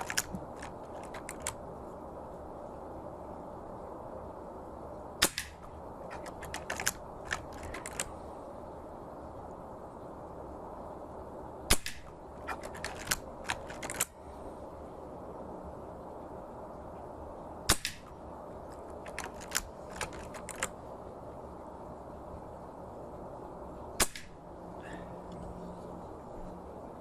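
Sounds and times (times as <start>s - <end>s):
air rifle shots: 5.2s - 8.1s, 11.7s - 14.2s, 17.7s - 18.1s, 24.0s - 24.4s
light clicks: 5.2s - 8.1s, 18.7s - 20.8s.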